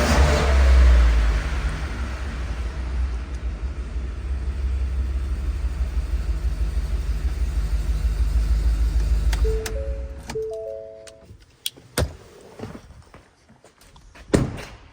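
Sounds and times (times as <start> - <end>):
pickup engine idling: 0.0 - 10.3.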